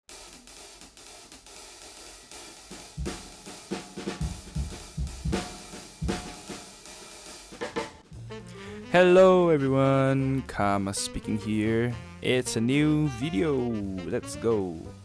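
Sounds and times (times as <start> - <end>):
drum kit beat: 0.0 - 9.6
intro music: 2.3 - 15.0.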